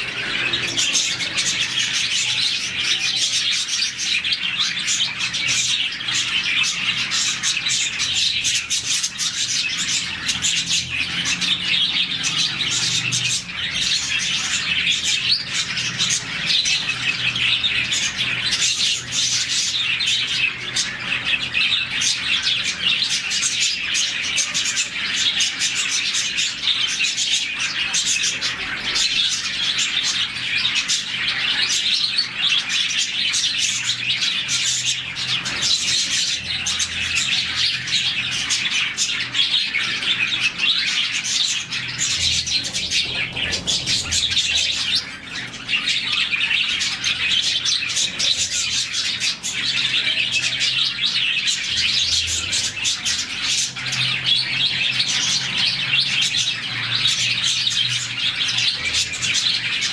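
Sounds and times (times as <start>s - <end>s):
budgerigars chirping: 0.0s - 59.9s.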